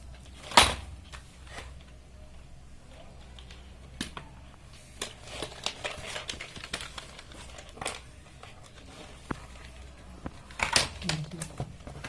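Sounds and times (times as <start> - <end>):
packaging crinkling: 3.2 - 12.0.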